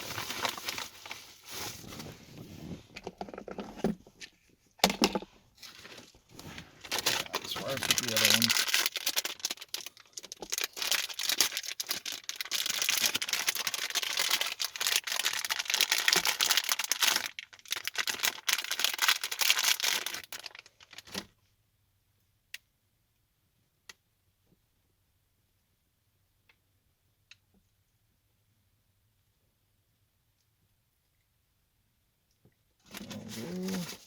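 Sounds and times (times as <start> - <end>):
crinkly plastic rustling: 0.0 - 21.4, 32.8 - 34.0.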